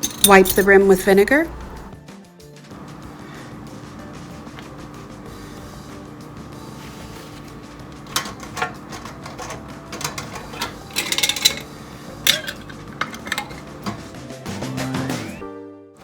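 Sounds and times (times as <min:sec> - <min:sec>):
metal lid clinking on glass jar: 0:00.0 - 0:00.9, 0:08.1 - 0:14.1
rattle of clicks: 0:08.0 - 0:11.7.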